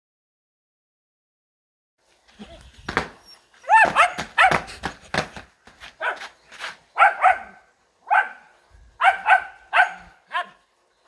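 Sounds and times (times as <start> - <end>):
dog barking: 3.6 - 4.8, 6.0 - 6.3, 7.0 - 10.6.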